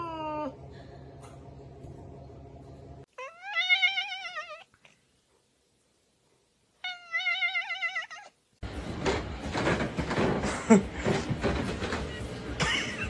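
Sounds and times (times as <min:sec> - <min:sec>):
cat meowing: 0:03.1 - 0:04.8, 0:06.8 - 0:08.4.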